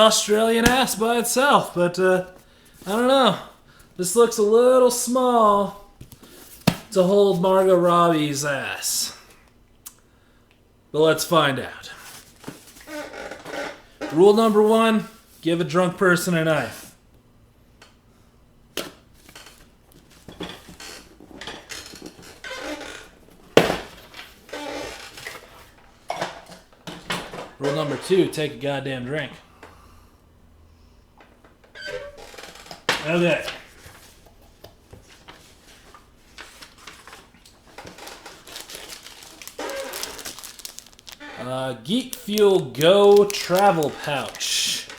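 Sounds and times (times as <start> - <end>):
cardboard scraping and rustling: 0.2 - 1.2, 36.4 - 41.2, 42.0 - 44.9
knife cutting packing tape: 0.6 - 1.1, 42.0 - 44.8.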